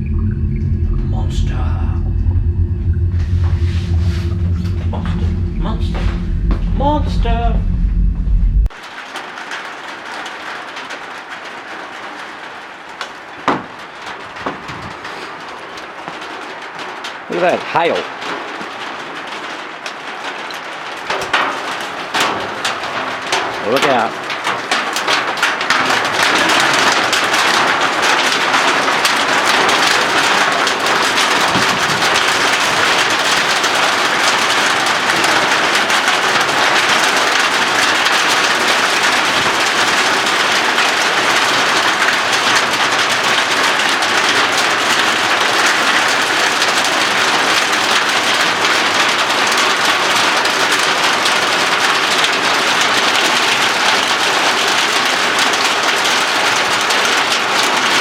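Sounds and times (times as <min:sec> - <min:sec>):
hail pattering: 0:17.3 - 0:58.0.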